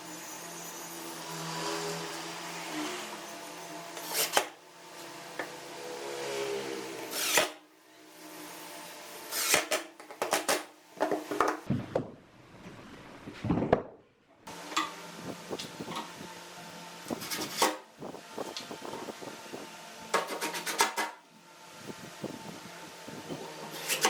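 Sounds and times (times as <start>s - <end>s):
power tool motor humming: 0.3s - 7.6s.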